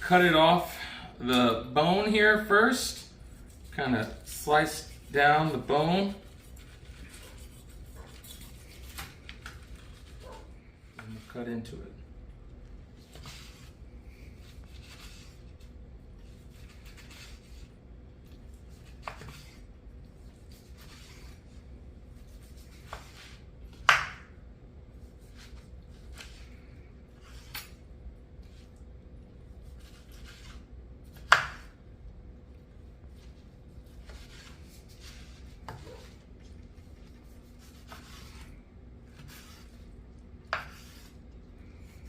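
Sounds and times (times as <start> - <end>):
knife slicing steak: 3.2 - 5.2, 5.8 - 10.5, 14.4 - 17.8, 18.5 - 19.7, 20.3 - 24.3, 27.1 - 27.8, 29.5 - 31.8, 33.1 - 36.2, 36.9 - 39.8, 40.4 - 41.3.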